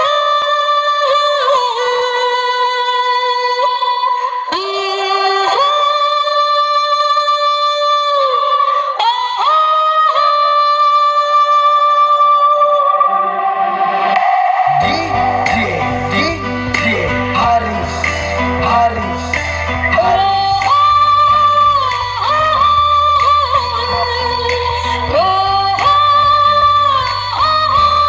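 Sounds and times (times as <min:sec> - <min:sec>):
synthetic voice-like lead line: 0:12.7 - 0:26.9.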